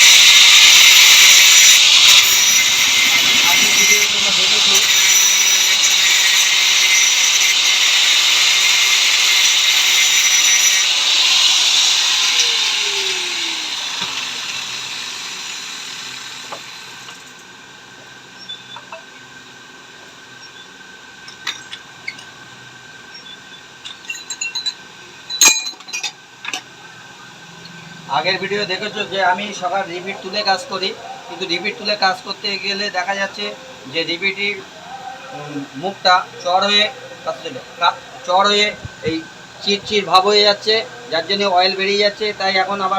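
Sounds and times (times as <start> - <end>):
motor winding down hum: 0.0 - 17.5
power cutting tool cutting metal: 0.0 - 17.5
metal part clicks and clinks: 23.8 - 26.6.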